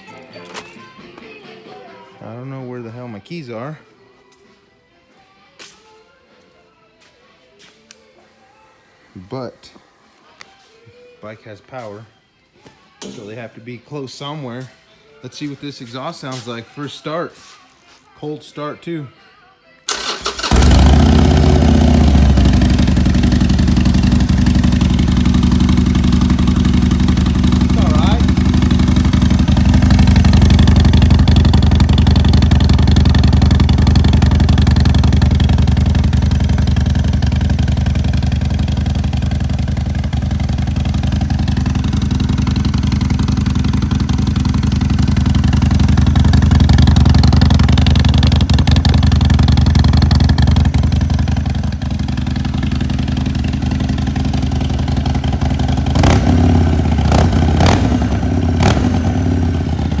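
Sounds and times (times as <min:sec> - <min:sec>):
motorcycle engine idling: 0:19.9 - 1:00.0.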